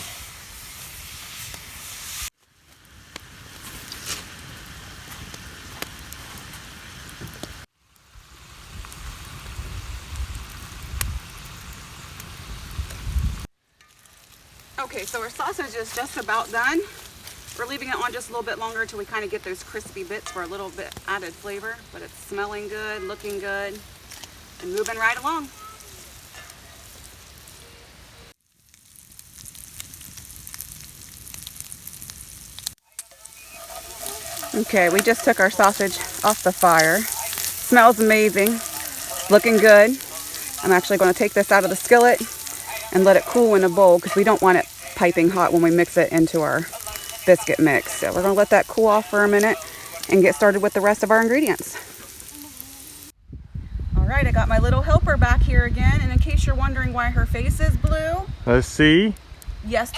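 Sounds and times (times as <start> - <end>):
fat popping and crackling: 0.0 - 7.7, 8.7 - 27.7, 28.6 - 53.1
sausage sizzling in a skillet: 0.0 - 53.2.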